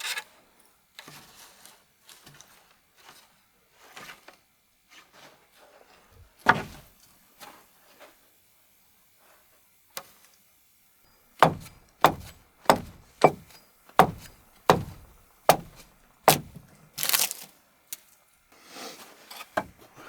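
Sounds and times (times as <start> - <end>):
light knocks: 11.4 - 16.6
heavy blows on wood: 11.4 - 16.7
crunching clatter: 11.4 - 17.5.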